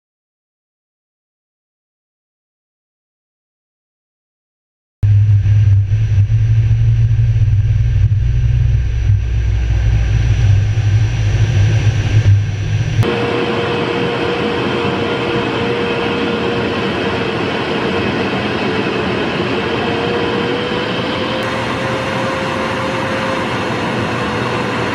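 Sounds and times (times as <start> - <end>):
deep jet engine rumble: 5.0 - 24.9
jet engine roar with rising whine: 5.1 - 24.9.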